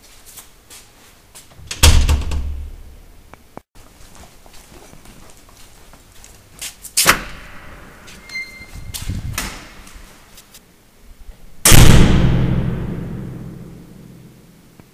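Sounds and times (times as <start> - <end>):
door slamming shut: 1.6 - 2.8, 7.0 - 7.8, 8.5 - 9.9
door squeak: 8.2 - 9.6.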